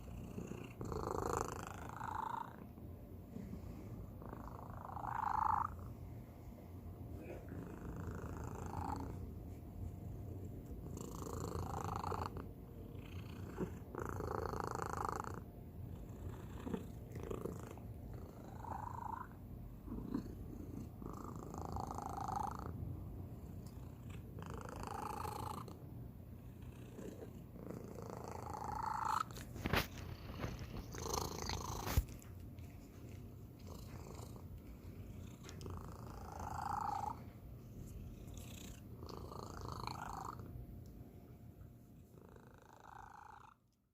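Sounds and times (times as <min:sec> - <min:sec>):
cat purring: 0:00.0 - 0:40.6, 0:41.8 - 0:43.8.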